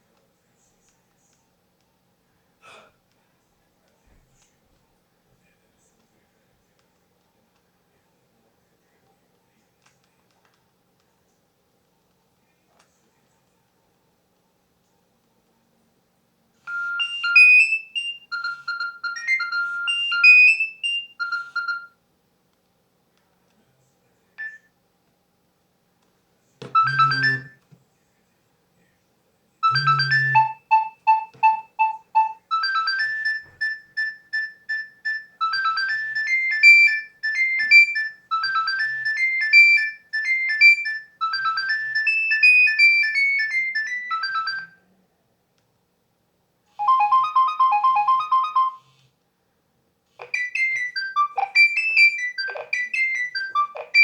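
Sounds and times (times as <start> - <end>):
mobile phone ringtones: 16.7 - 21.9, 26.7 - 27.6, 29.6 - 44.8, 46.8 - 48.9, 50.2 - 54.0.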